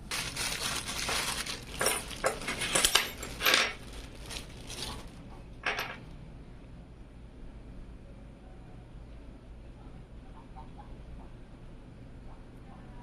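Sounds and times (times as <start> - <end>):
packaging rustling: 0.0 - 5.2
parts clattering and clinking: 0.1 - 6.0.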